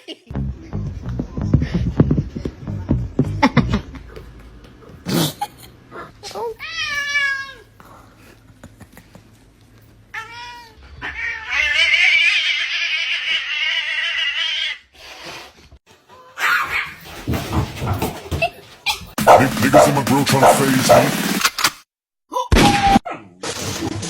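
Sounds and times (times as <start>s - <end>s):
cat yowling: 10.1s - 14.8s.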